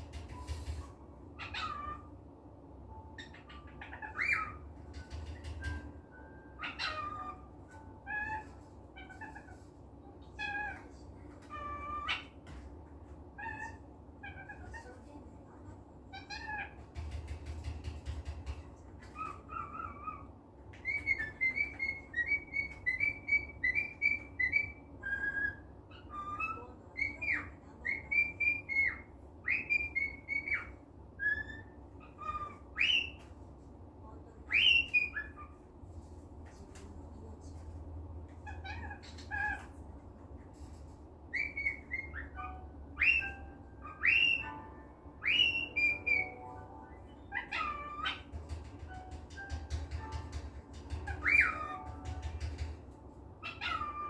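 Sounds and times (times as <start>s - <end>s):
cockatiel chirping and whistling: 1.4s - 2.1s, 3.2s - 9.6s, 19.0s - 33.3s, 34.5s - 35.6s, 38.4s - 39.7s, 41.3s - 52.7s, 53.4s - 54.0s.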